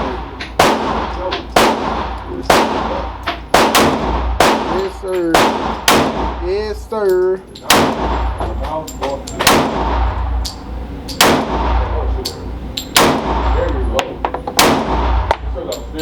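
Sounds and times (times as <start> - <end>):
pistol shots with echo: 0.0 - 6.5, 7.6 - 8.6, 9.3 - 10.5, 11.1 - 13.8, 14.5 - 15.5.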